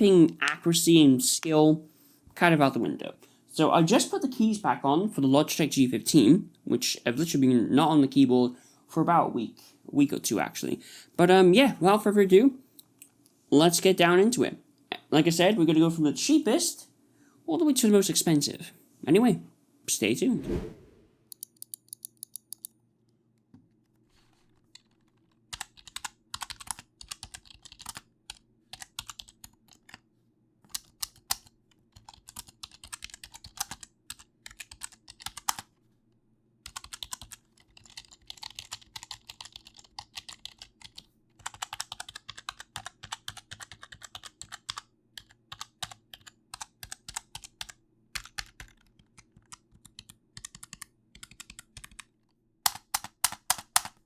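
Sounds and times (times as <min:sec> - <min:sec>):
keyboard keystroke clicks: 0:21.3 - 0:22.7, 0:52.7 - 0:54.0.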